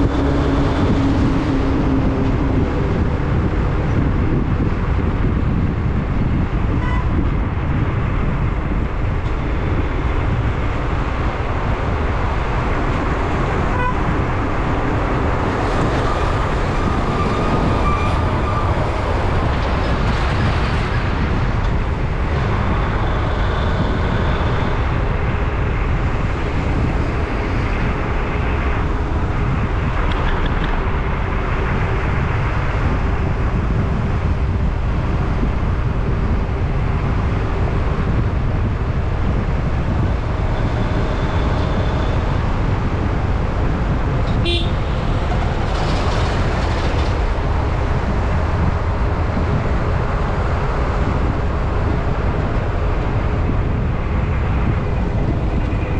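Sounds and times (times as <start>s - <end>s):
road rumble inside moving vehicle: 0.0s - 55.9s
vehicle horns: 6.7s - 7.2s, 13.7s - 14.2s, 44.3s - 45.4s.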